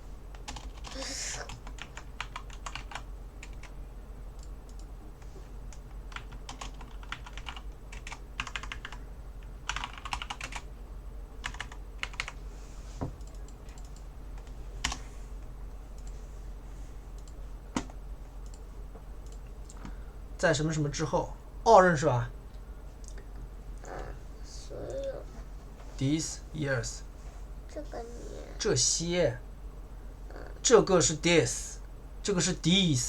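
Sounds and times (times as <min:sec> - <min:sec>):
typing on computer keyboard: 0:00.3 - 0:03.7, 0:05.7 - 0:09.0, 0:09.7 - 0:10.6, 0:11.4 - 0:12.4.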